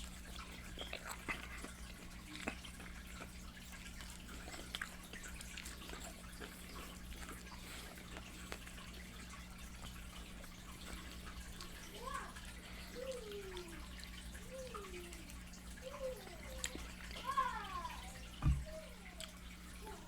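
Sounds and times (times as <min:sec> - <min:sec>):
chewing mouth sounds: 0:00.0 - 0:17.2
low electrical hum: 0:00.0 - 0:20.0.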